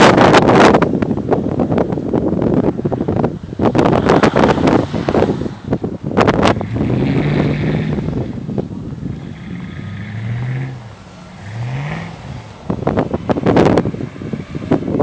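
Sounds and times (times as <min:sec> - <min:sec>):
wind buffeting microphone: 0:00.0 - 0:15.0
car engine revving: 0:03.6 - 0:15.0.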